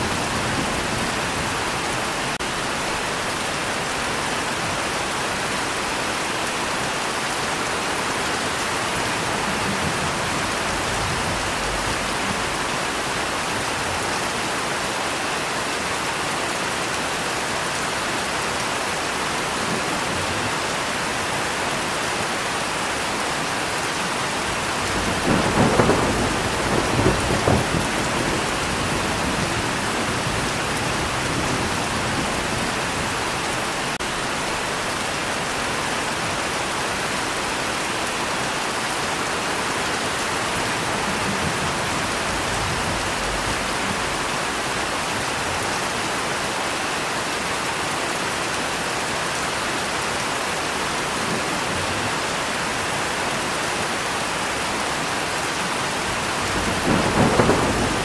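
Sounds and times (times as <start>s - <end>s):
heavy rain: 0.0s - 58.0s
thunder rumble: 8.8s - 14.0s, 24.4s - 34.8s, 40.4s - 45.0s, 56.0s - 58.0s.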